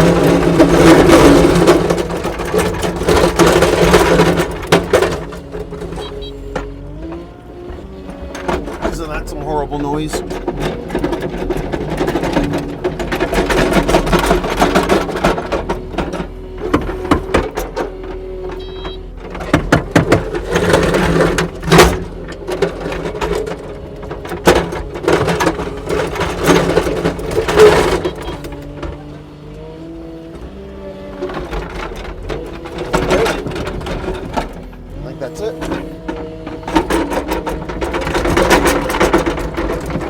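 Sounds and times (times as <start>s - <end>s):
diesel engine under load: 0.0s - 40.0s
machine clanks and knocks: 35.5s - 40.0s.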